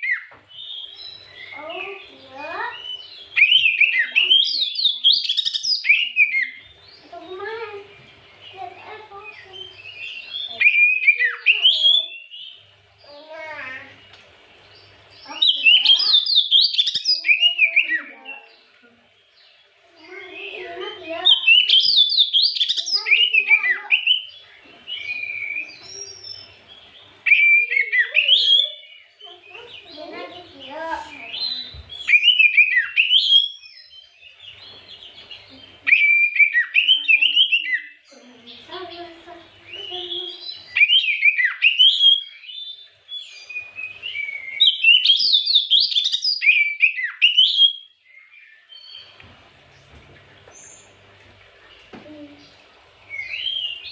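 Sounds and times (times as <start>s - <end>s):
bird singing whistled chirps: 0.0s - 7.0s, 9.3s - 12.7s, 14.8s - 18.5s, 20.2s - 29.2s, 31.2s - 38.1s, 39.6s - 49.2s, 53.1s - 53.9s.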